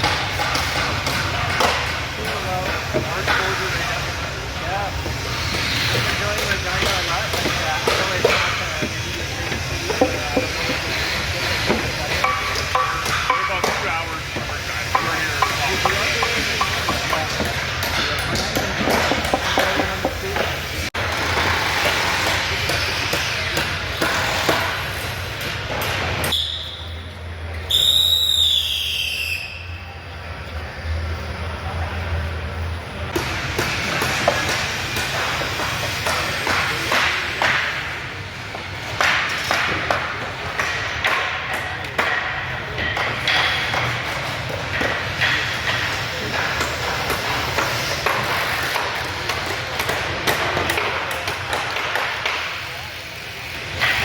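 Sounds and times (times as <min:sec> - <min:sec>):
workshop din with knocks: 0:00.0 - 0:28.9, 0:30.2 - 0:54.0
hammer blows on lumber: 0:05.0 - 0:26.7, 0:33.1 - 0:53.0.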